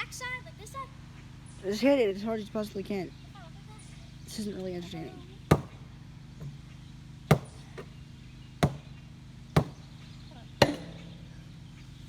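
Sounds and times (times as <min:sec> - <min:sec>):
axe striking sheet metal: 0:10.6 - 0:11.5.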